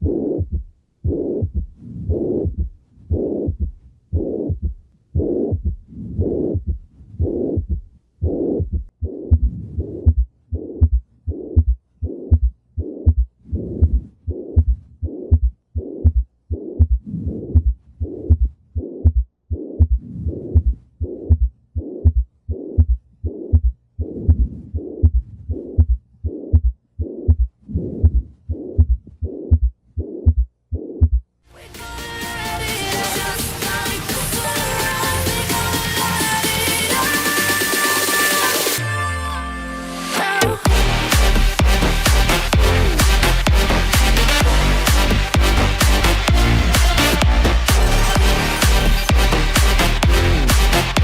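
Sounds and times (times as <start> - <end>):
blowing heart murmur: 0.0 - 31.2
heartbeat through stethoscope: 0.0 - 31.2, 40.7 - 51.0.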